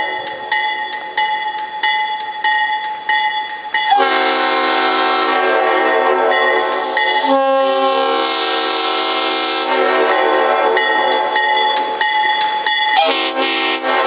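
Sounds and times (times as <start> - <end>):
locomotive air horn chord: 4.0 - 10.6, 13.0 - 14.0.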